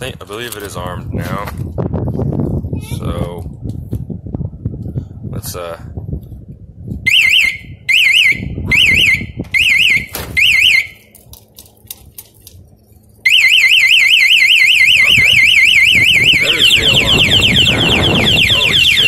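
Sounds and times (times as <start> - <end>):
motorcycle alarm warbling siren: 7.1 - 11.1, 13.2 - 19.0
alarm warbling chirps: 13.2 - 19.0.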